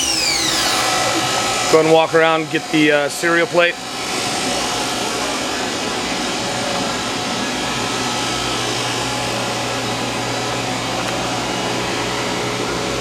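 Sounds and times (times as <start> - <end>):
machining centre motor whirring: 0.0 - 13.0.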